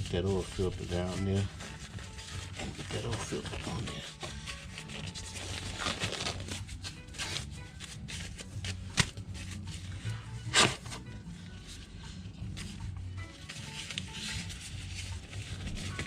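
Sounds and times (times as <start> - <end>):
hands rustling objects: 0.0 - 16.0
scrape: 0.1 - 6.2, 9.7 - 11.0.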